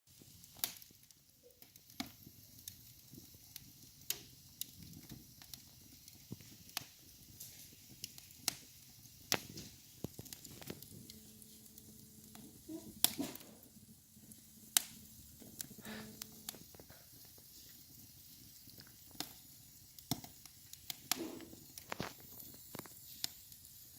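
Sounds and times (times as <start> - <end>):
wood fire crackling and popping: 0.1 - 23.9.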